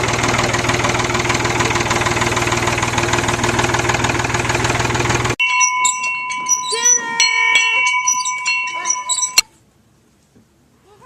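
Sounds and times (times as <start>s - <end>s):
vehicle engine running: 0.0s - 5.4s.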